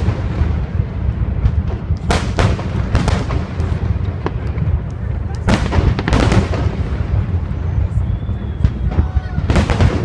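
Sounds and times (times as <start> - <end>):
deep rumble: 0.0 - 10.0
fireworks bangs and pops: 0.0 - 10.0.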